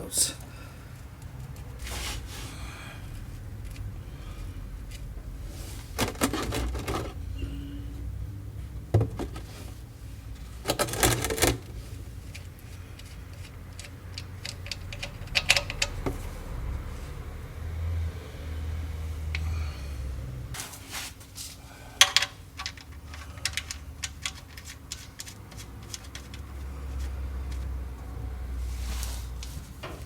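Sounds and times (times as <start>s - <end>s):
steady low hum: 0.0s - 10.8s.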